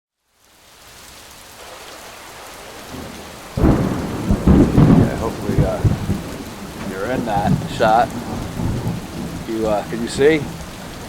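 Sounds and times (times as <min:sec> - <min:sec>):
steady rain hiss: 0:00.1 - 0:11.0
thunder rumbling: 0:02.9 - 0:11.0.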